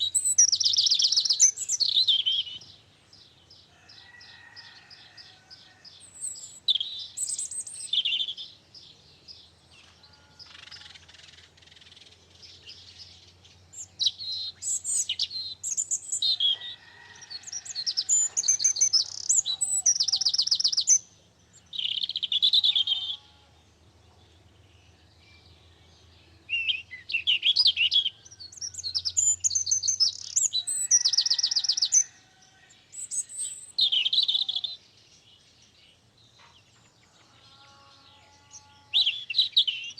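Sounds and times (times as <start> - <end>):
songbird warbling and trilling: 0.0 - 2.7, 6.1 - 8.4, 13.7 - 16.7, 17.4 - 23.3, 26.5 - 32.2.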